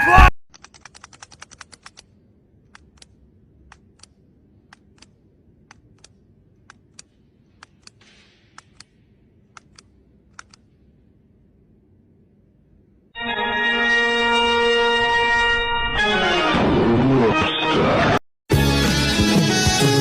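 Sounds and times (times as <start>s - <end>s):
keys typing clicks: 0.5s - 2.1s, 2.7s - 10.7s.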